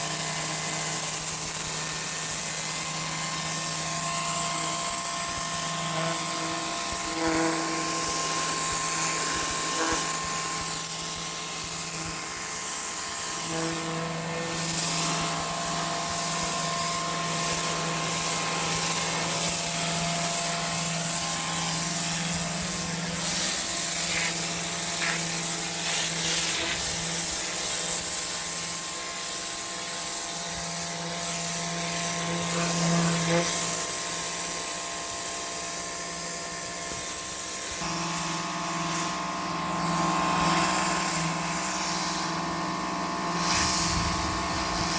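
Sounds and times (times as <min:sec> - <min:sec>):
pressure washer motor hum: 0:00.2 - 0:29.0, 0:38.1 - 0:44.9
water jet hissing: 0:14.6 - 0:28.1.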